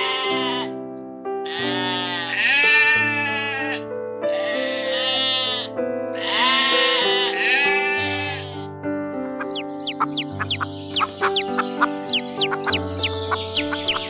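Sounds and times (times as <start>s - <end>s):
farm animal bleating: 0.0s - 0.8s, 1.4s - 8.7s, 9.3s - 14.0s
background music with sustained chords: 9.3s - 14.0s.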